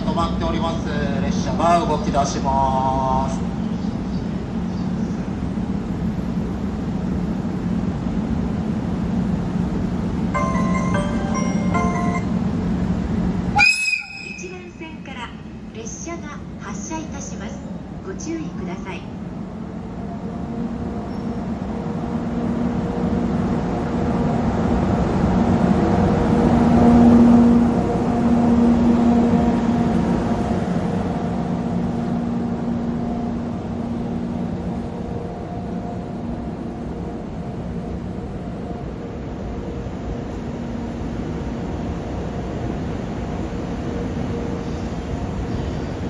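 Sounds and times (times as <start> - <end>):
electric locomotive humming: 0.0 - 46.0
station chime melody: 10.4 - 12.9.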